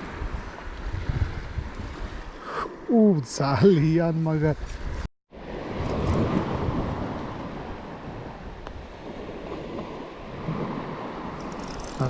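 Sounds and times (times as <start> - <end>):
wind noise on microphone: 0.0 - 2.4, 4.6 - 12.0
sea waves washing: 5.3 - 12.0.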